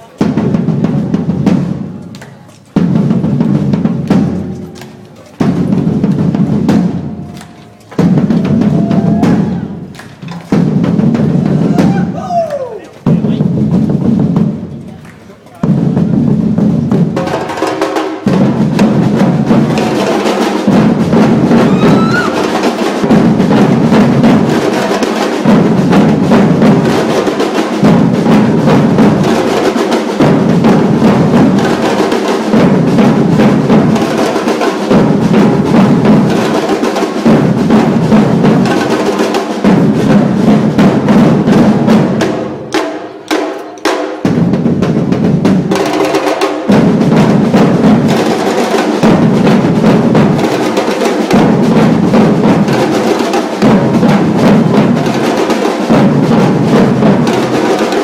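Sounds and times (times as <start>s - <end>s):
percussion ensemble drumming: 0.0s - 58.0s.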